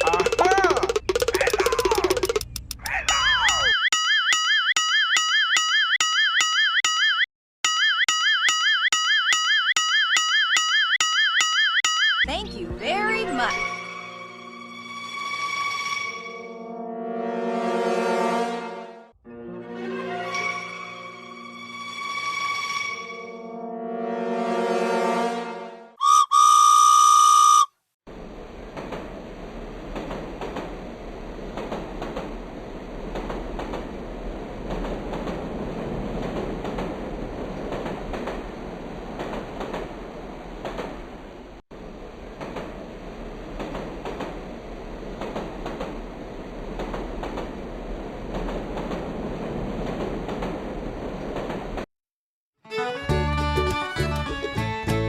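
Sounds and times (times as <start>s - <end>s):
wheel clicks: 0.0s - 6.9s
train whistle: 23.5s - 27.7s
train clattering on rails: 28.2s - 51.9s.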